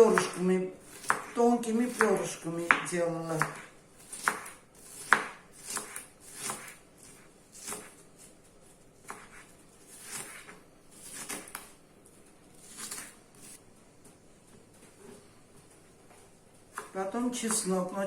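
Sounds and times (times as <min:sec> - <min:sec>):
knife slicing onion on cutting board: 0:00.0 - 0:08.4, 0:09.0 - 0:11.8, 0:12.6 - 0:13.6, 0:16.7 - 0:17.8.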